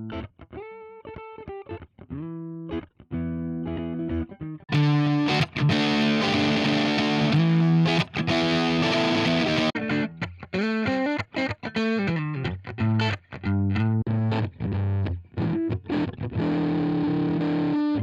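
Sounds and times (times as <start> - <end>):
distorted electric guitar: 3.6 - 18.0.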